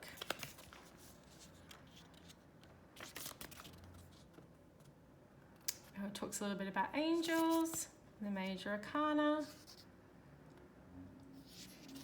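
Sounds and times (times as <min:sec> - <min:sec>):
paper pages rustling: 0:00.0 - 0:02.4, 0:03.0 - 0:04.9, 0:11.4 - 0:12.0.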